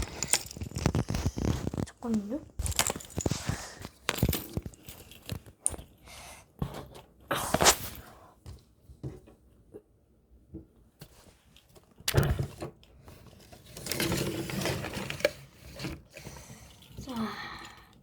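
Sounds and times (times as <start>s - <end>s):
rustling: 0.0s - 5.9s
objects knocking and clicking: 0.0s - 6.0s.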